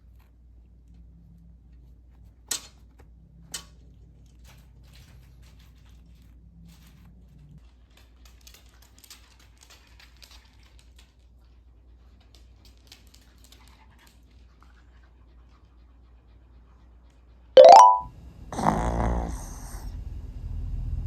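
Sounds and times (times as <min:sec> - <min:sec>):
small clicks and rustles: 0:00.0 - 0:14.8
dog panting softly: 0:09.8 - 0:17.6.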